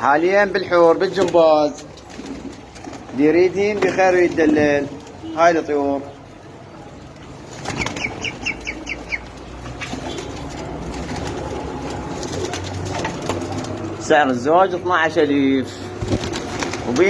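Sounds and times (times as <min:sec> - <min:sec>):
pigeon wings flapping: 0:01.0 - 0:05.2, 0:07.3 - 0:14.1, 0:15.9 - 0:17.0
pigeons cooing: 0:07.2 - 0:14.0.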